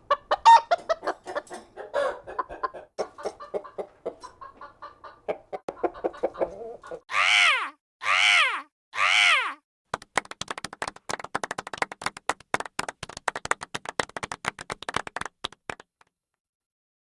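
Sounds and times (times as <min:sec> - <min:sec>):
animal call rising and falling: 0:07.1 - 0:09.6
small group clapping: 0:09.9 - 0:16.1.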